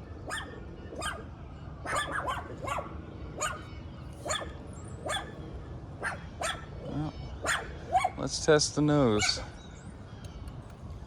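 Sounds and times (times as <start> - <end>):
dog barking: 0.2 - 5.4, 6.0 - 6.7, 7.4 - 8.2, 9.1 - 9.5.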